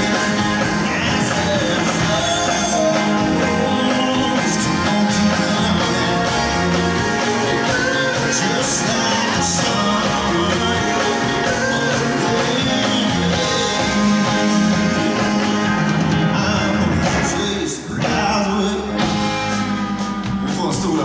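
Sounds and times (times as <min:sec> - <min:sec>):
live rock and soul band playing: 0:00.0 - 0:21.0.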